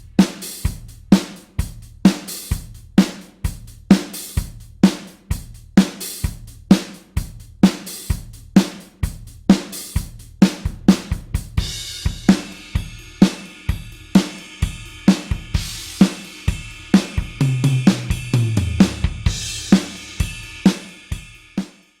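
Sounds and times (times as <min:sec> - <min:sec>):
drum fill on lower drums: 0:00.0 - 0:21.9
drum kit rock beat: 0:00.0 - 0:22.0
ringing cymbal: 0:11.6 - 0:22.0.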